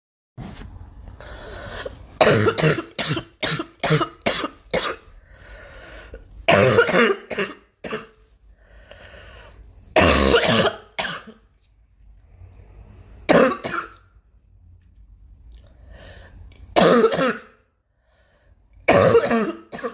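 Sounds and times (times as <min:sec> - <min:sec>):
girl coughing: 0:02.2 - 0:05.1, 0:06.5 - 0:08.2, 0:10.0 - 0:11.4, 0:13.3 - 0:14.0, 0:16.8 - 0:17.6, 0:18.9 - 0:19.9.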